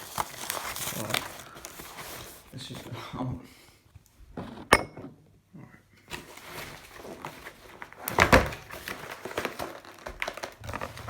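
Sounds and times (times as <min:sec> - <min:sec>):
cardboard box scraping and rustling: 0:00.0 - 0:02.9, 0:06.1 - 0:11.0.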